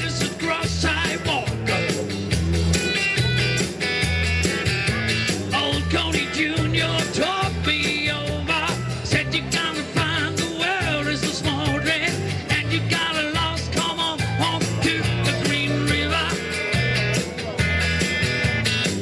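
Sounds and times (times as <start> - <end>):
live rock and roll band: 0.0 - 19.0.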